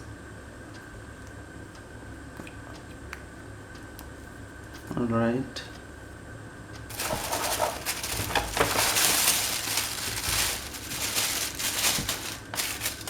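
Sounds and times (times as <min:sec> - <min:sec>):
plastic packaging crinkling: 0:06.9 - 0:13.0.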